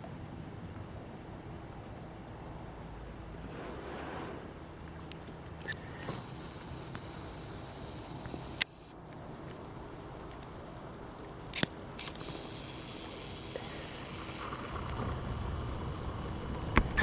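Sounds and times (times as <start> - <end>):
insects droning: 0.0 - 17.0
low outdoor rumble: 0.0 - 17.0
sharp clicks: 11.5 - 15.1.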